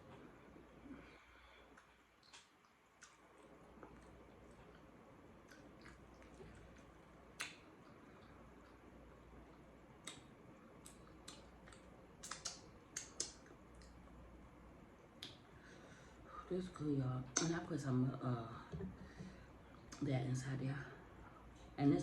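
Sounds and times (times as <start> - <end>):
low room hum: 0.0 - 22.0
mouth clicks and smacks: 1.7 - 8.9, 9.5 - 14.2, 15.1 - 15.5.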